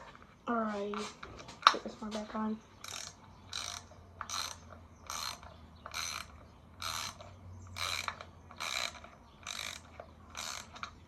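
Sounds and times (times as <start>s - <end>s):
socket ratchet clicking: 2.8s - 11.0s.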